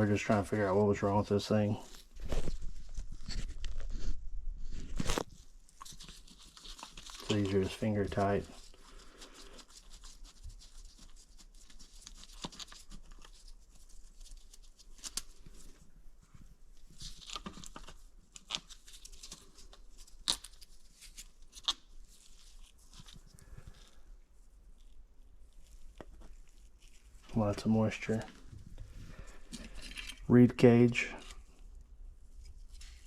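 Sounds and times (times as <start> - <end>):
rustling and scraping: 1.4 - 33.0.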